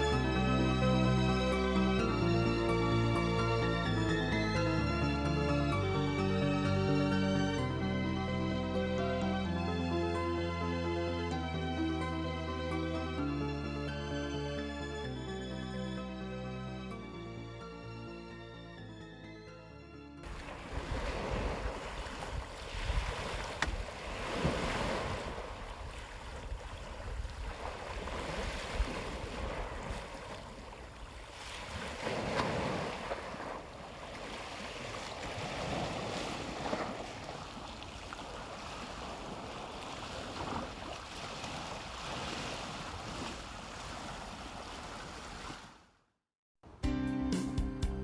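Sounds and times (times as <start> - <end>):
sea waves washing ashore: 0.0 - 16.1, 20.2 - 45.9
wind rumble on microphone: 20.3 - 30.3.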